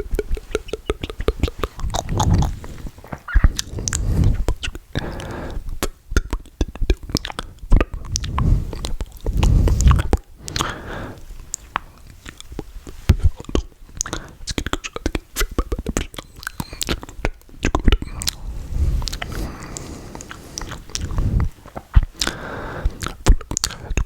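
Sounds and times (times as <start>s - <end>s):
wet lip and tongue clicks: 0.0s - 10.8s, 11.4s - 24.0s
deep mouth swells: 0.0s - 11.8s, 17.9s - 24.0s.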